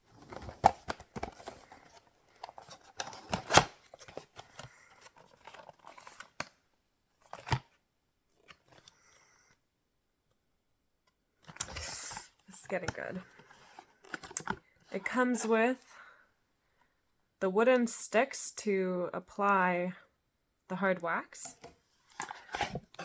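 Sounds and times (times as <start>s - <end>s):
cardboard and plastic rustling: 0.0s - 9.0s, 11.4s - 15.4s, 21.5s - 23.0s.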